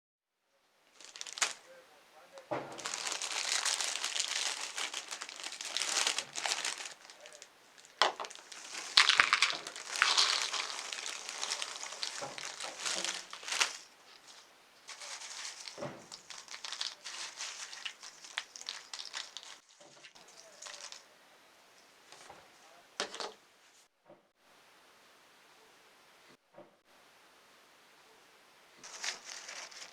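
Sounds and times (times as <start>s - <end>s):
crackers and packaging crinkling: 0.8s - 21.1s, 28.8s - 29.9s.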